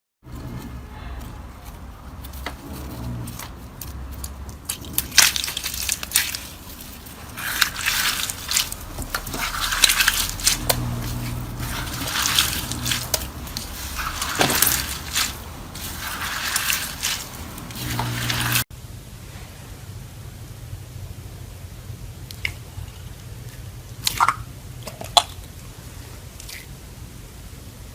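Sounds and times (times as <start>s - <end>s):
wet slime squishing: 0.4s - 18.7s, 22.3s - 25.6s, 26.3s - 26.7s.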